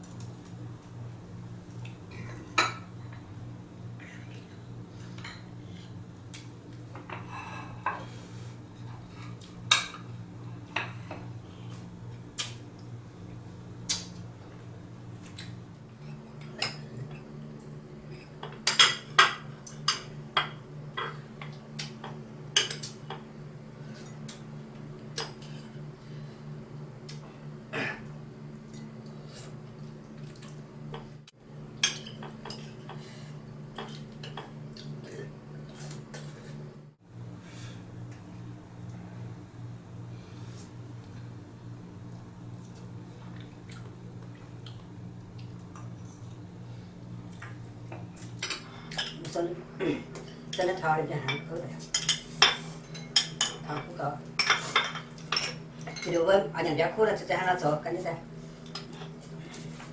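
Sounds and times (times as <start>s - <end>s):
steady low hum: 0.0s - 59.9s
utensils clinking against pot: 51.3s - 56.2s.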